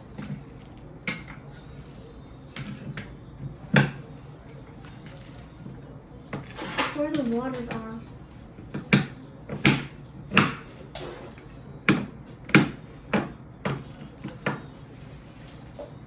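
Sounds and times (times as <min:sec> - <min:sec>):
knocks and thuds in kitchen: 0:02.6 - 0:04.1, 0:08.6 - 0:10.8, 0:11.8 - 0:14.7.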